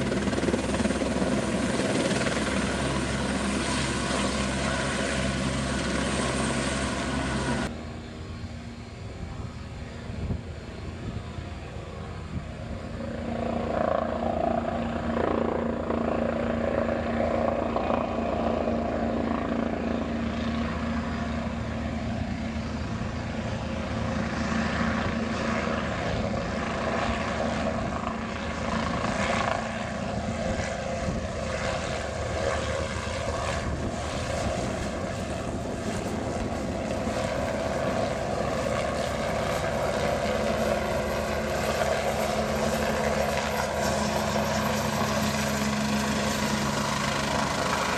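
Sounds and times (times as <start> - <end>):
helicopter engine and rotor drone: 0.0 - 47.9.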